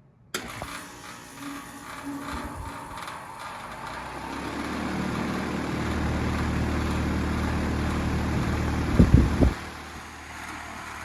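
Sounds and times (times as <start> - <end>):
heat pump mechanical hum: 0.4 - 11.0.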